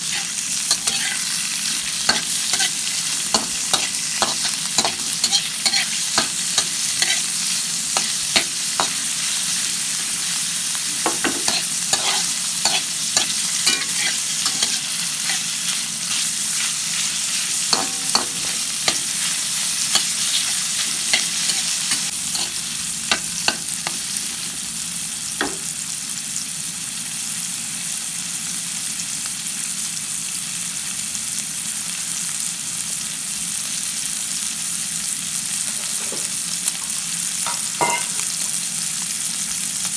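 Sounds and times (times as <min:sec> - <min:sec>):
utensil scraping a pan: 0:00.0 - 0:09.1, 0:10.9 - 0:16.2, 0:17.7 - 0:24.6, 0:35.7 - 0:36.4
food sizzling in a pan: 0:00.0 - 0:39.9.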